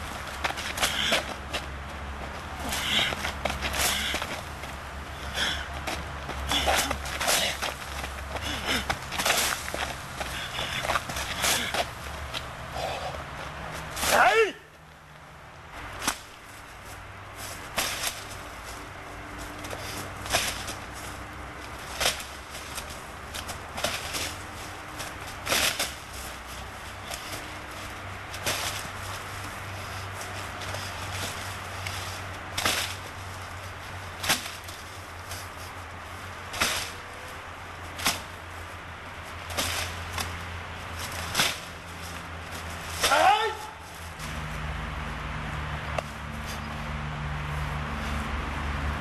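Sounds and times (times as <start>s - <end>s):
sharp cracks of karate strikes: 14.0s - 14.6s, 32.5s - 33.0s, 34.2s - 34.7s, 36.5s - 37.0s, 41.0s - 41.7s, 42.9s - 43.8s.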